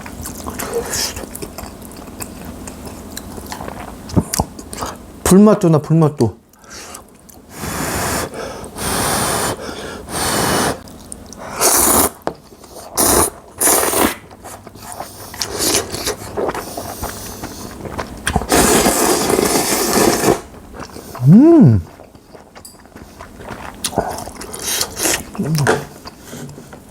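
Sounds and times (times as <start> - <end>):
person slurping noodles: 6.7 - 10.8, 11.5 - 17.8, 18.4 - 22.1.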